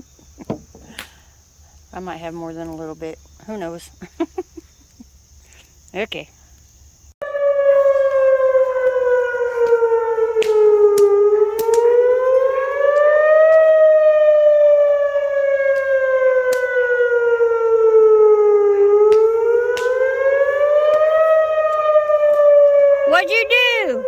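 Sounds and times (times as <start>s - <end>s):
fire siren wailing: 7.2s - 24.0s.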